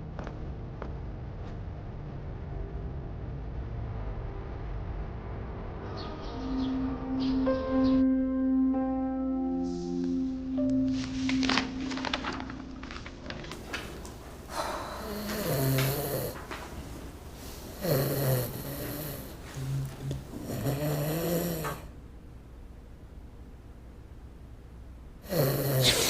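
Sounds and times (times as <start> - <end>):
person making wavering vocal sounds: 19.5 - 21.9.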